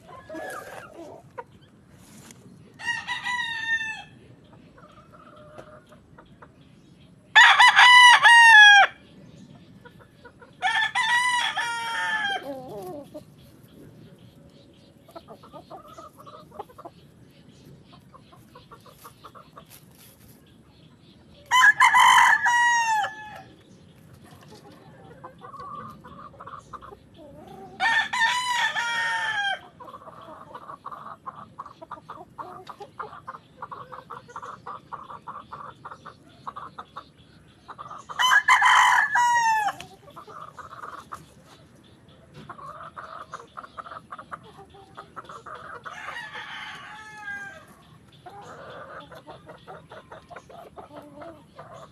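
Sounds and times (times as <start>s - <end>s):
roosters crowing: 0.0s - 1.4s, 2.6s - 4.3s, 7.3s - 9.1s, 10.5s - 13.4s, 21.4s - 23.6s, 24.8s - 36.8s, 37.8s - 41.2s, 42.5s - 51.9s.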